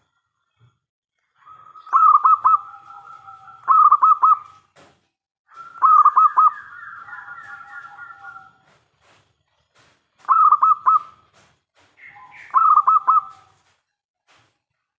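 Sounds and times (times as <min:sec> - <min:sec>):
dove cooing: 0:01.4 - 0:04.6, 0:05.5 - 0:08.7, 0:10.2 - 0:11.2, 0:12.1 - 0:13.6.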